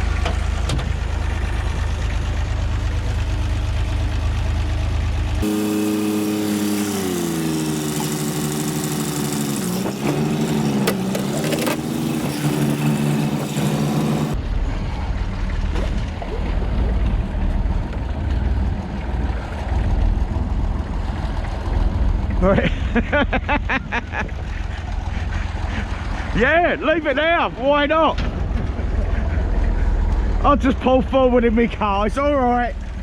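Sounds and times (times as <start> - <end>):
tractor diesel engine running: 0.0 - 15.5, 24.3 - 27.8.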